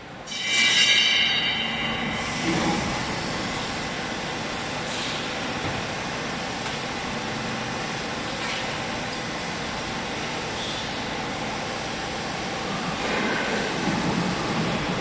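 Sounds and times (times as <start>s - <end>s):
hydraulic baler running: 1.3s - 15.0s.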